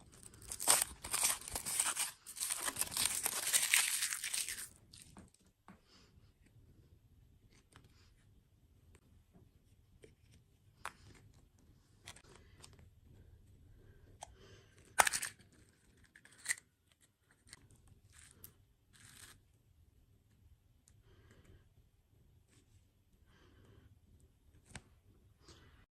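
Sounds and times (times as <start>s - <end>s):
packaging crinkling: 0.0s - 5.1s
person eating sweets: 0.0s - 5.2s.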